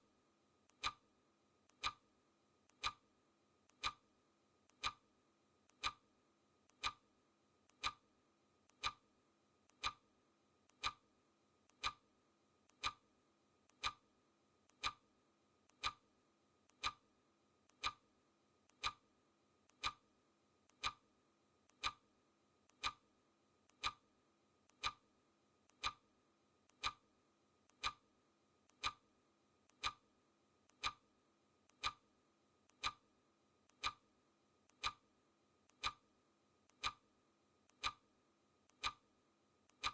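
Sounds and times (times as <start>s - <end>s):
clock ticking: 0.7s - 1.0s, 1.7s - 2.0s, 2.7s - 3.0s, 3.7s - 4.0s, 4.7s - 5.0s, 5.7s - 6.0s, 6.7s - 7.0s, 7.7s - 8.0s, 8.7s - 9.0s, 9.7s - 10.0s, 10.7s - 11.0s, 11.7s - 12.0s, 12.7s - 13.0s, 13.7s - 14.0s, 14.7s - 15.0s, 15.7s - 16.0s, 16.7s - 17.0s, 17.7s - 18.0s, 18.7s - 19.0s, 19.7s - 20.0s, 20.7s - 21.0s, 21.7s - 22.0s, 22.7s - 23.0s, 23.7s - 24.0s, 24.7s - 25.0s, 25.7s - 26.0s, 26.7s - 27.0s, 27.7s - 28.0s, 28.7s - 29.0s, 29.7s - 30.0s, 30.7s - 31.0s, 31.7s - 32.0s, 32.7s - 33.0s, 33.7s - 34.0s, 34.7s - 35.0s, 35.7s - 36.0s, 36.7s - 37.0s, 37.7s - 38.0s, 38.7s - 39.0s.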